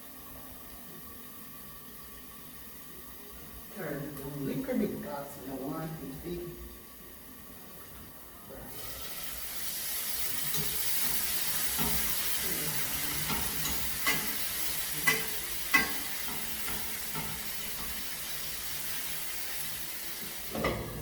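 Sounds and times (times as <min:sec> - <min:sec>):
pot bubbling: 0:00.0 - 0:21.0
steam hissing: 0:08.5 - 0:21.0
spoon knocking against pot: 0:13.2 - 0:14.4, 0:15.0 - 0:18.0.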